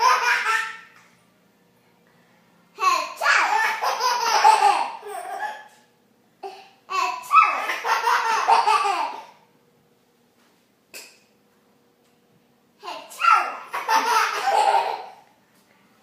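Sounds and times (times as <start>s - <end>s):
young child laughing: 0.0s - 1.0s, 12.9s - 15.2s.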